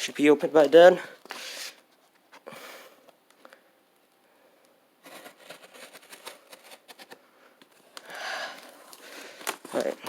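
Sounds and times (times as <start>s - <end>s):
cardboard packaging crackling: 5.0s - 10.0s.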